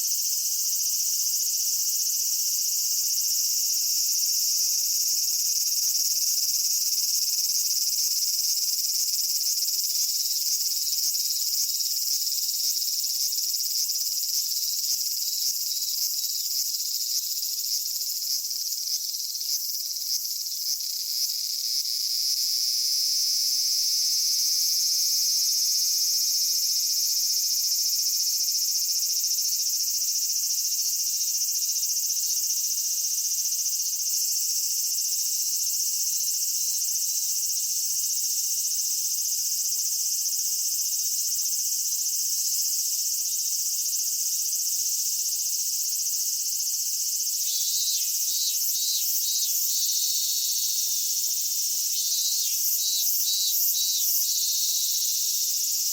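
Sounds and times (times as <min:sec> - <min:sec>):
cicadas buzzing: 0:00.0 - 0:55.9
pulsing insect call: 0:44.6 - 0:55.9.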